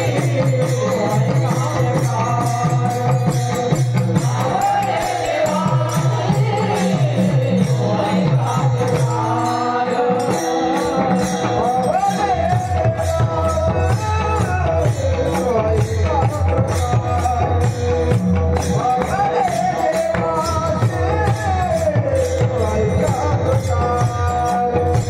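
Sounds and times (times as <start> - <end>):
person singing melismatically: 0.0 - 18.0
quick jingling beat: 0.0 - 25.0.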